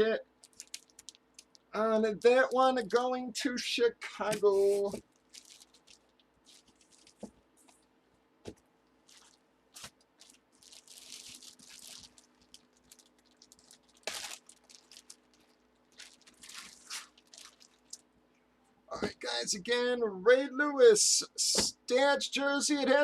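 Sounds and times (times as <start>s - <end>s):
plastic packaging crinkling: 0.4s - 3.0s, 4.3s - 7.9s, 9.0s - 18.1s.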